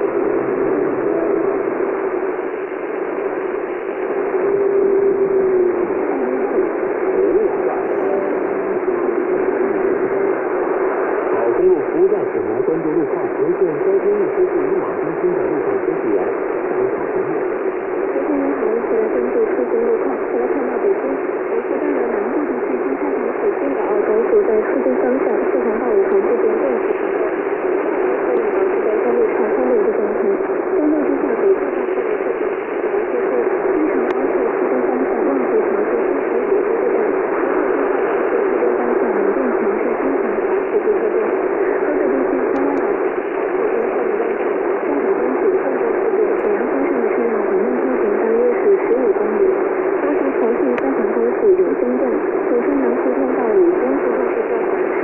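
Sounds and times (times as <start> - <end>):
faint muffled radio signal: 0.0 - 55.0
radio static and hiss: 0.0 - 55.0.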